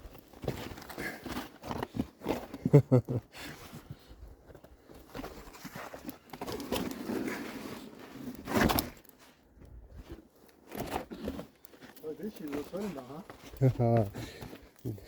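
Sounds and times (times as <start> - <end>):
footsteps on rocky trail: 0.0 - 2.7, 9.2 - 15.0.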